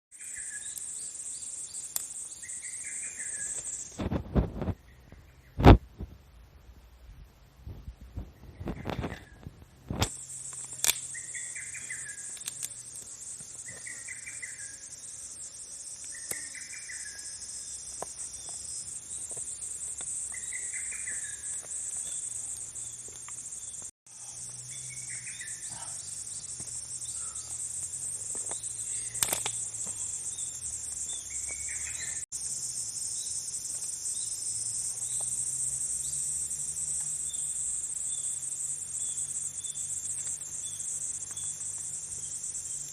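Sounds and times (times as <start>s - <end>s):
crickets chorus: 0.1s - 5.8s, 8.2s - 42.9s
sharp pops: 5.6s - 5.9s, 9.9s - 11.2s.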